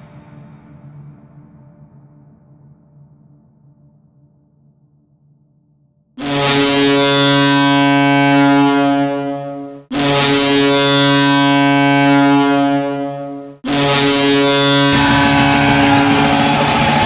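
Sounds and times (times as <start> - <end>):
hockey goal horn blasts: 6.2 - 17.0.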